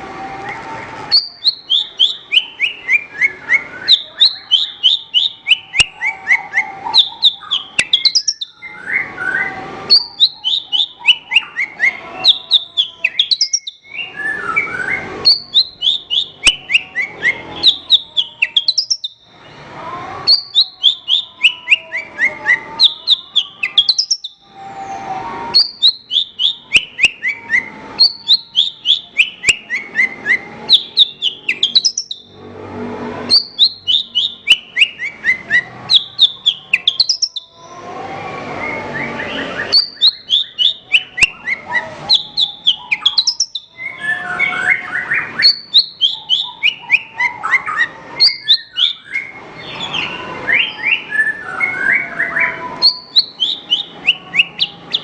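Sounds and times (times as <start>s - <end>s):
bird singing quick chirps: 1.1s - 19.6s, 20.3s - 24.4s, 25.5s - 32.4s, 33.3s - 37.7s, 38.8s - 55.0s
raspy bird calls: 25.5s - 32.3s, 38.8s - 55.0s.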